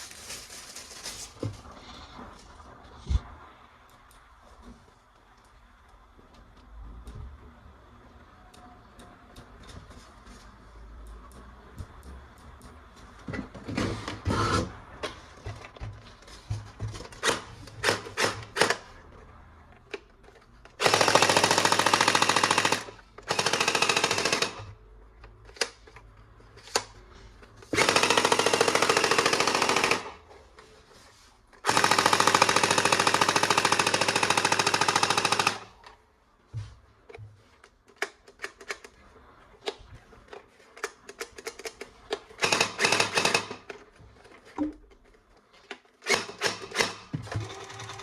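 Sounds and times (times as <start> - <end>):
toy gun rapid rattling: 20.8 - 24.7, 27.8 - 30.2, 31.6 - 35.8, 42.4 - 43.8, 46.0 - 48.0
plastic toy gun handling: 37.6 - 39.0.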